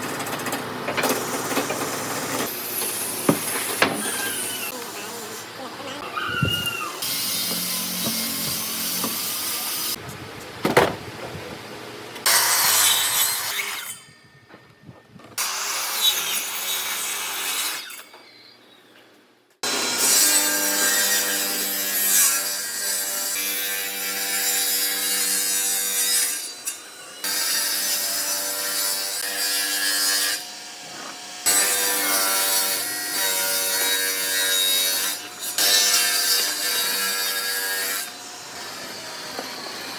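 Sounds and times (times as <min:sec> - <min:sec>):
wood being sawn: 0:06.4 - 0:10.0.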